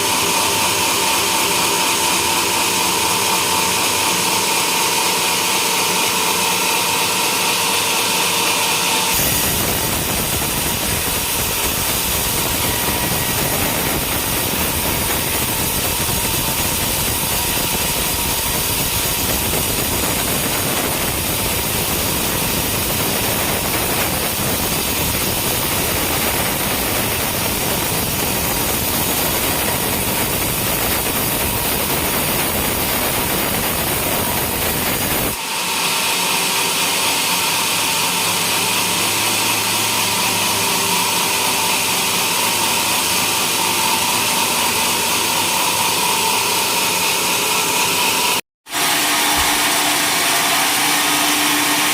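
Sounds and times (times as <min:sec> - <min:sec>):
motor running: 0:06.1 - 0:35.4, 0:48.8 - 0:51.9
sawmill sawing through trunk: 0:47.2 - 0:51.9.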